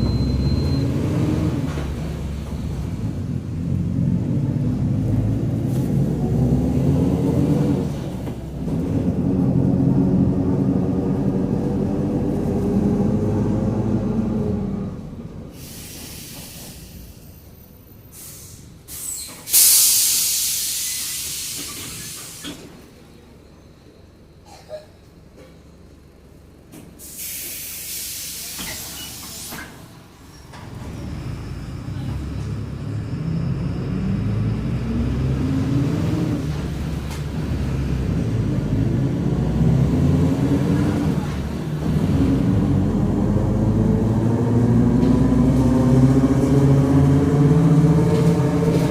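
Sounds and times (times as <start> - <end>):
bus diesel engine pulling: 0.0 - 48.9
compressed air hiss: 15.6 - 17.0, 18.2 - 22.6, 27.0 - 29.7.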